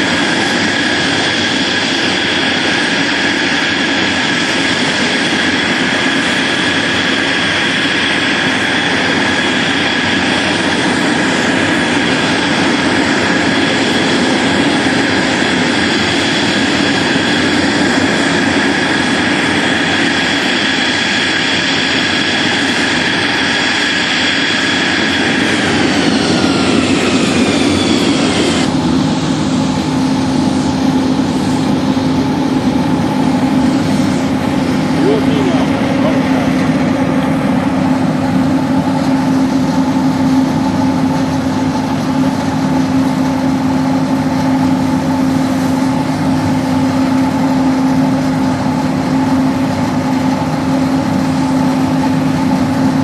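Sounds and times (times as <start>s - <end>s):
jet engine whine: 0.0s - 53.0s
low steady rumble: 25.0s - 53.0s.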